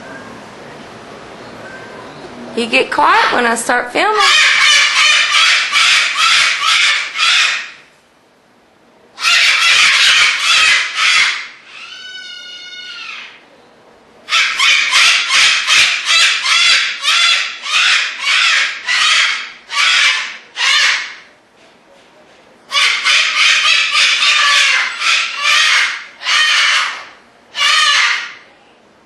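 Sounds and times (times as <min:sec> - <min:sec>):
cockatoos screeching: 0:04.2 - 0:07.9, 0:09.2 - 0:13.4, 0:14.3 - 0:21.3, 0:22.7 - 0:28.5.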